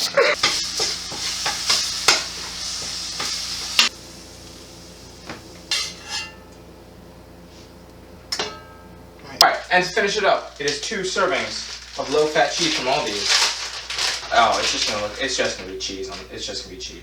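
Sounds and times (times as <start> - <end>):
meat sizzling in a frying pan: 0.0 - 6.2, 9.7 - 15.2.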